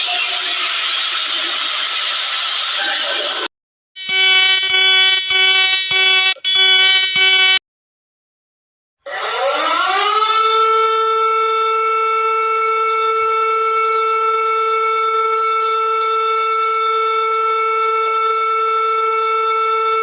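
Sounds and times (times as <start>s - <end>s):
emergency alert alarm tone: 4.0s - 7.6s, 9.1s - 20.0s.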